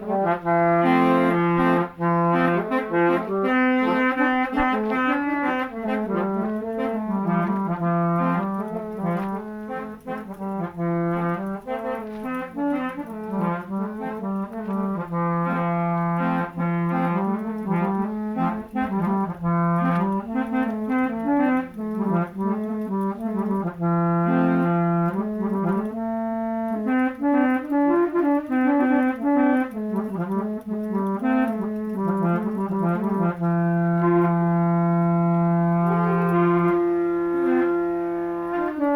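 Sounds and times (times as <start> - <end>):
musical vehicle horns playing tune: 0.0 - 38.9.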